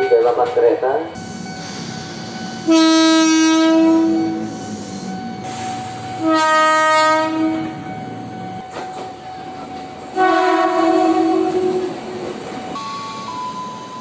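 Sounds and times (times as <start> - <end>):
electric train horn blasts: 2.6 - 4.5, 6.2 - 7.8, 10.1 - 11.9.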